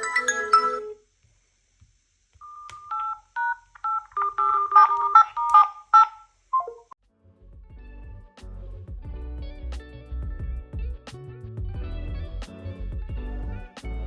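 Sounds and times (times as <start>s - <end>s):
phone keypad beeps: 2.4s - 6.8s.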